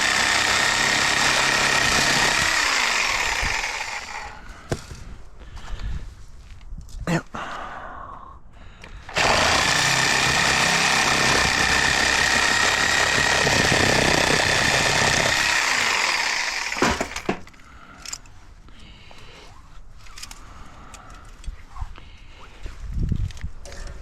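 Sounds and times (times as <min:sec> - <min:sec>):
power tool cutting metal: 0:00.0 - 0:04.4, 0:09.1 - 0:17.4.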